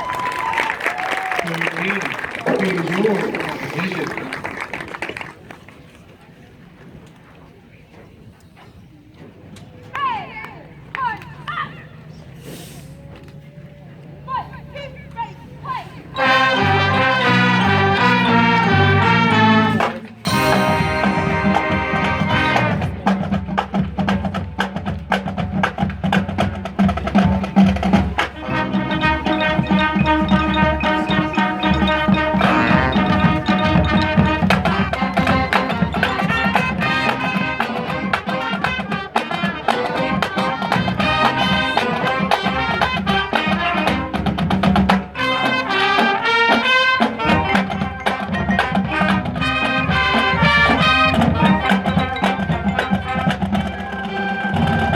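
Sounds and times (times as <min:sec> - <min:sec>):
marching band brass: 0:00.0 - 0:05.3, 0:15.6 - 0:54.9
drumline sharp drum strokes: 0:15.8 - 0:54.9.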